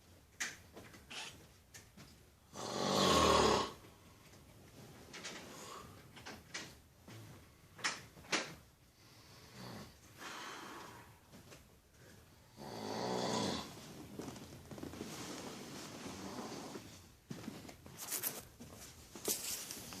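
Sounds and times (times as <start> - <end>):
loud snoring: 2.5 - 3.8, 9.4 - 10.0, 12.5 - 13.8.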